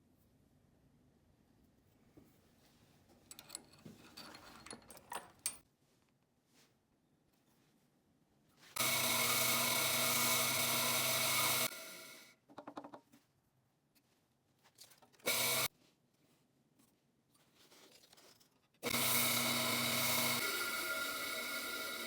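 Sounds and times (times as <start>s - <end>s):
small power tool motor: 8.8s - 12.3s, 15.2s - 15.7s, 18.8s - 22.0s.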